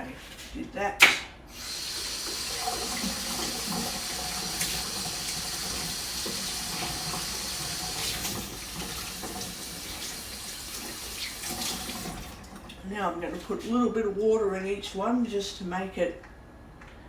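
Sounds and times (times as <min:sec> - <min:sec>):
tap running water: 0:01.5 - 0:13.7.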